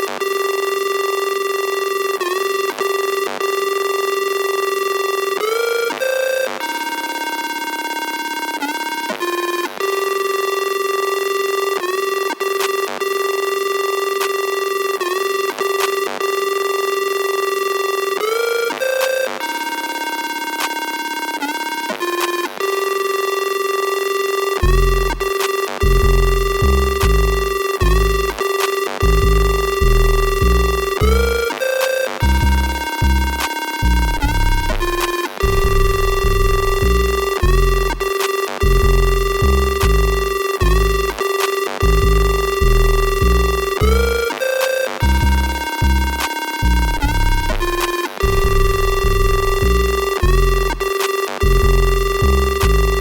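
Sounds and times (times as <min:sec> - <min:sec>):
held synthesizer tone: 0:24.7 - 0:53.0.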